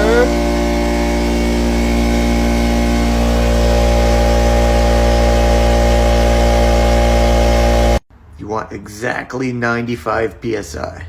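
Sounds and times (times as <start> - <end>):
air compressor running: 0.0 - 8.0.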